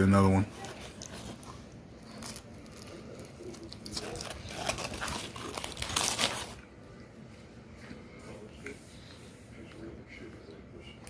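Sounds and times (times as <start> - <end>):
crunching while chewing sandwich: 0.7 - 6.7.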